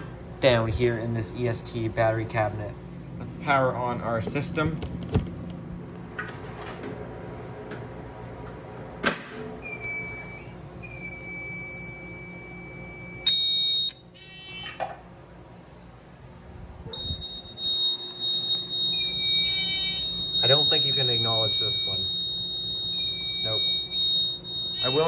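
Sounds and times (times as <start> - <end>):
high beeps: 17.0 - 25.0
steady high tone: 17.0 - 25.0.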